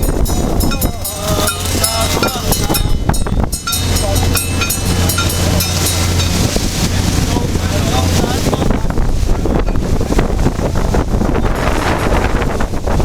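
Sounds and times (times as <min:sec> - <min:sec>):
people talking: 0:00.0 - 0:10.2
motor boat engine humming: 0:00.0 - 0:13.0.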